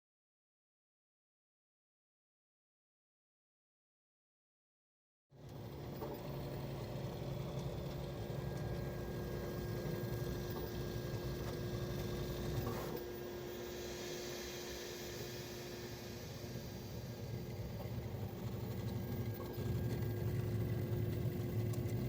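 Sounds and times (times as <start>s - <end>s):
printer motors humming: 5.4s - 22.0s.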